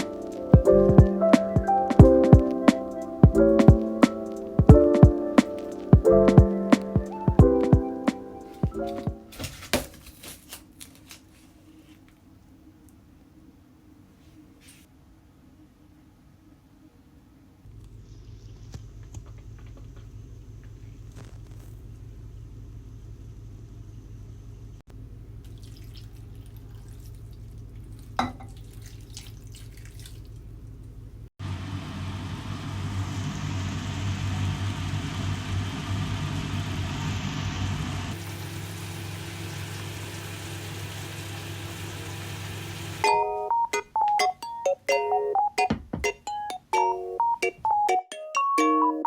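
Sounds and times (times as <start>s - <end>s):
low hum: 31.4s - 40.1s
chiming mallet instrument tune: 46.4s - 49.0s.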